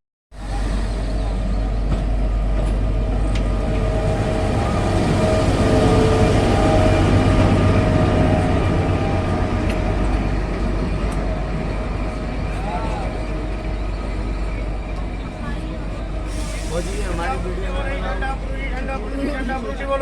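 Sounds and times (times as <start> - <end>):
train carriage rumbling: 0.3 - 20.0.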